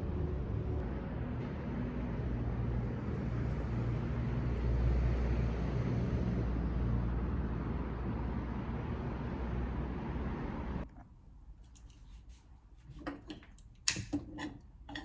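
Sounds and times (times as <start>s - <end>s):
motor vehicle rumbling: 0.0s - 10.9s.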